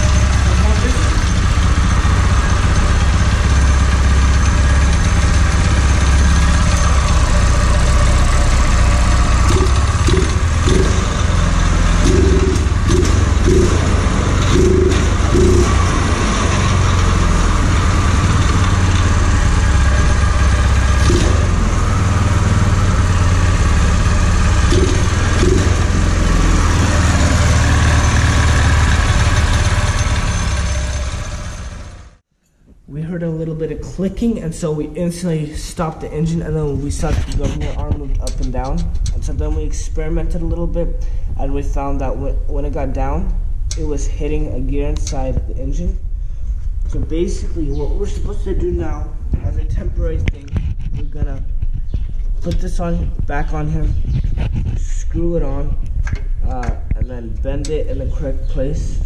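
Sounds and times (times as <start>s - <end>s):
small engine running: 0.0s - 32.2s.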